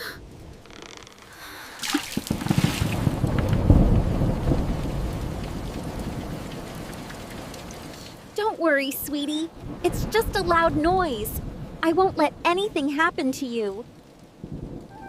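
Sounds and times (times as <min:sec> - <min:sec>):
steady rain: 0:00.0 - 0:15.0
thunder crack and rumble: 0:02.1 - 0:08.4, 0:09.5 - 0:13.2, 0:13.8 - 0:15.0.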